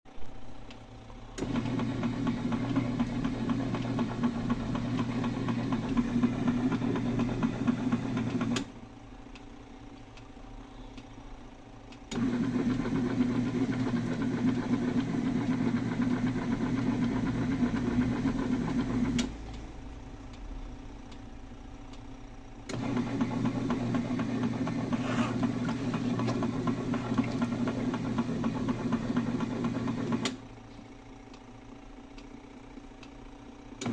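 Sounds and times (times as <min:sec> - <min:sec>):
washing machine motor humming: 0:00.2 - 0:33.9
washing machine churning: 0:01.4 - 0:08.8, 0:12.1 - 0:21.2, 0:22.6 - 0:30.4.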